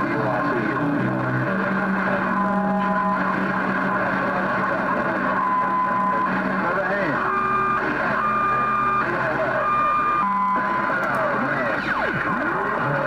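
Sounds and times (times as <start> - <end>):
garbled overlapping radio voices: 0.0 - 13.0
radio static: 0.0 - 13.0.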